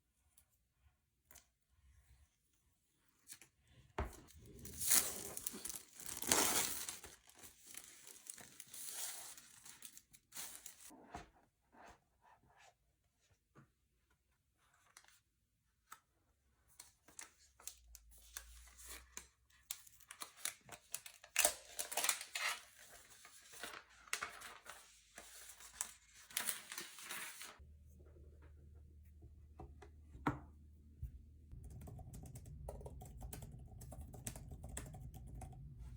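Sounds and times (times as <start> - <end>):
paper and plastic tearing: 4.6 - 10.9.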